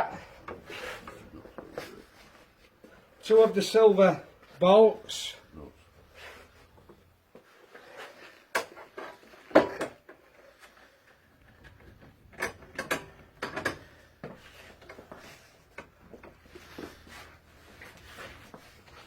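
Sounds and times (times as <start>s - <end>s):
bolts and metal parts knocking: 11.6s - 15.0s.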